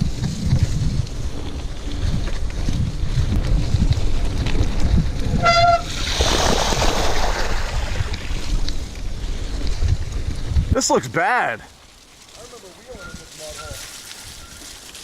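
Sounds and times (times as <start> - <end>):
mountain bike riding on trail: 0.0 - 15.0
wind rumbling on microphone: 0.0 - 15.0
bike brake squeal: 5.4 - 6.0, 12.8 - 14.9.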